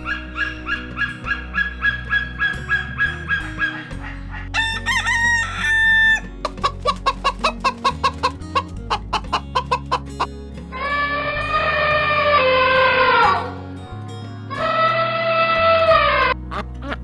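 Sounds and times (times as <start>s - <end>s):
chickens clucking: 0.0s - 10.3s, 16.2s - 17.0s
background music: 0.0s - 17.0s
rooster crowing: 4.5s - 6.8s.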